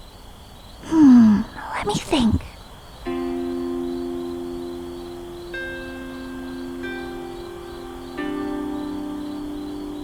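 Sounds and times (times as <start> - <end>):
slow harp music: 3.1 - 10.0.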